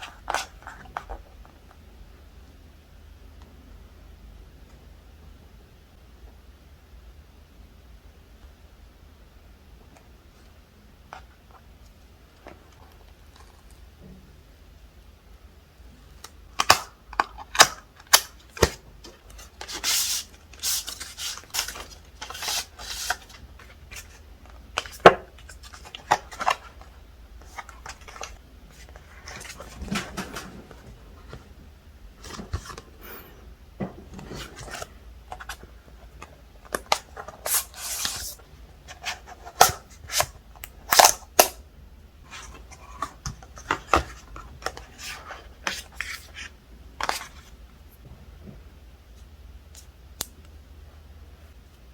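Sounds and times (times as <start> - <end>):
packaging rustling and sliding: 17.4 - 24.2.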